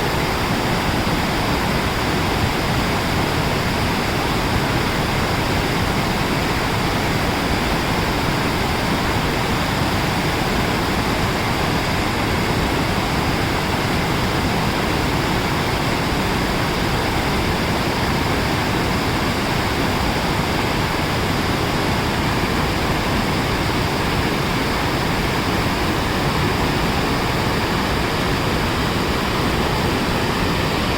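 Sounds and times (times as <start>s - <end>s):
mountain stream rushing: 0.0s - 30.9s.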